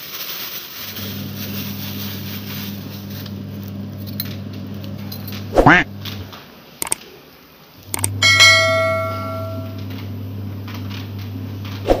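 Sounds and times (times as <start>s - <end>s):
steady low hum: 1.0s - 6.4s, 7.8s - 12.0s
bell-like metallic strike: 8.2s - 9.8s.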